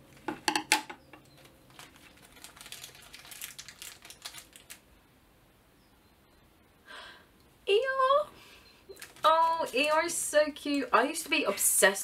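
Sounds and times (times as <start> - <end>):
plastic bag crinkling: 1.2 - 4.9, 8.9 - 11.6.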